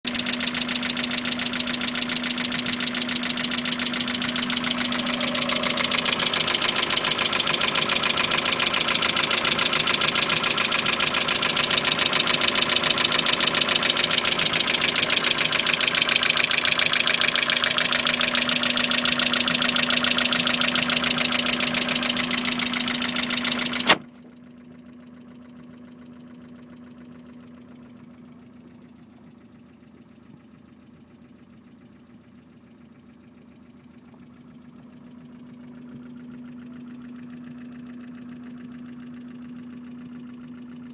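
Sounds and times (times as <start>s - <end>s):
car engine idling with ticking: 0.1s - 24.0s.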